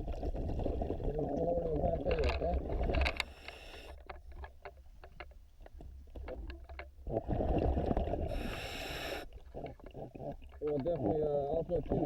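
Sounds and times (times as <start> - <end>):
exhaled bubbles rushing: 7.1 - 8.5.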